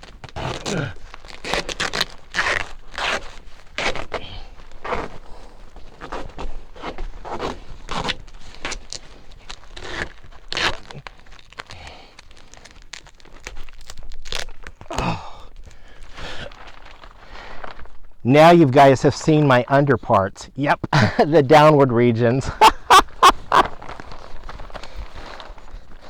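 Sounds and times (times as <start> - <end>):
duct tape tearing off roll: 0.0 - 4.2, 6.0 - 15.1
tape crinkling and scraping on duct: 0.0 - 18.2, 22.8 - 26.0.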